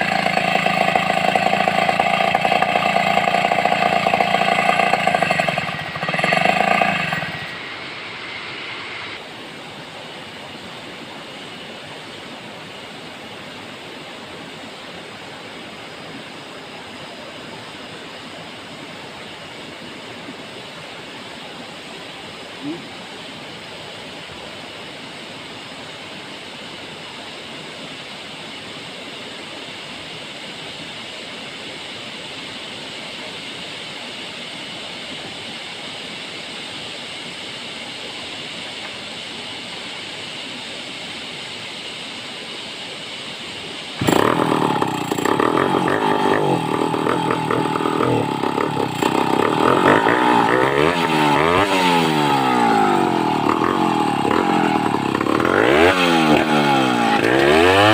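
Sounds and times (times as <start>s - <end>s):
chainsaw running and revving: 0.0s - 8.6s, 44.0s - 57.9s
steady background hiss: 0.0s - 57.9s.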